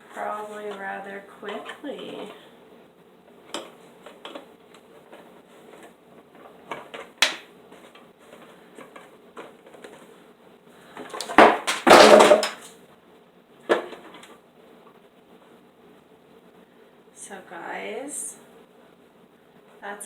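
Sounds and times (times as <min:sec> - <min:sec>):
plastic parts clicking and knocking: 0:06.7 - 0:08.0, 0:11.0 - 0:12.7
parts rattling and scraping: 0:11.1 - 0:12.7.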